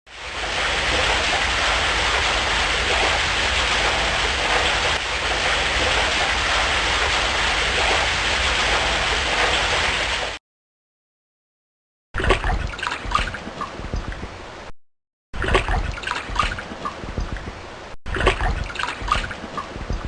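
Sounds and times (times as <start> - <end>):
water rushing and splashing: 0.1 - 10.4.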